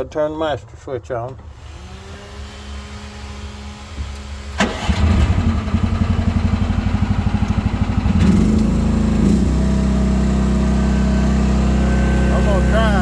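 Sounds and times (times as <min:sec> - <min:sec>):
small engine running: 0:01.5 - 0:13.0
engine cranking: 0:04.6 - 0:06.1.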